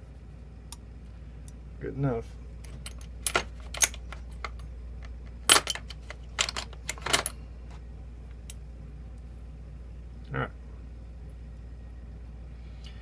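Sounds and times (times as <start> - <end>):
faint steady hum: 0.0 - 13.0
metal clicks from lock tools: 2.6 - 7.3.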